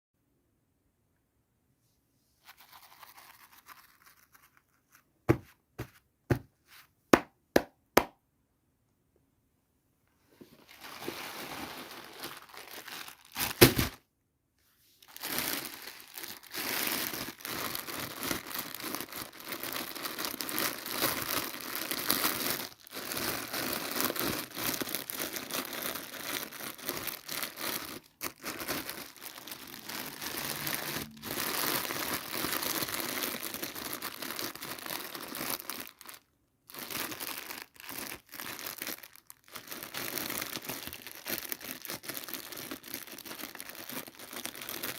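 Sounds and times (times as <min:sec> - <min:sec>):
packaging crinkling and tearing: 0:02.4 - 0:04.8, 0:10.6 - 0:14.0, 0:15.0 - 0:44.9.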